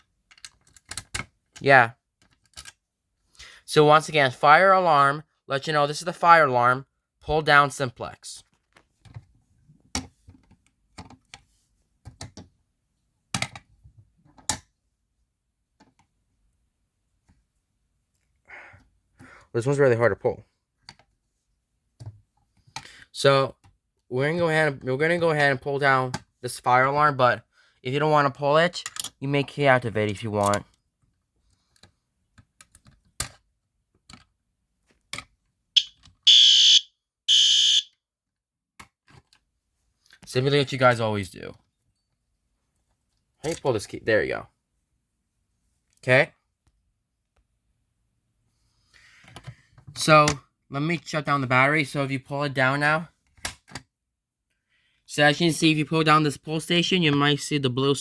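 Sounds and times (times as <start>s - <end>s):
alarm horn blast: 35.8s - 37.9s.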